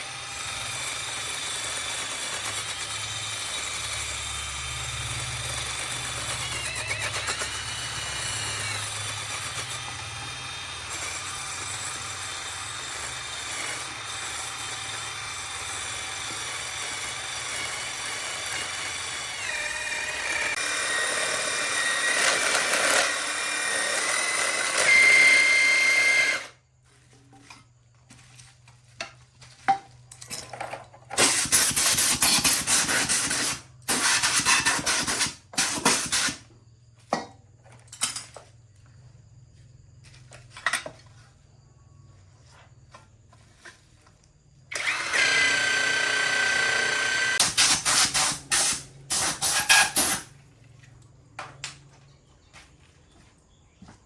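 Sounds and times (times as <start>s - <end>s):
power tool whining: 0.0s - 26.6s, 44.7s - 50.3s
hissing grinding bursts: 31.2s - 36.4s.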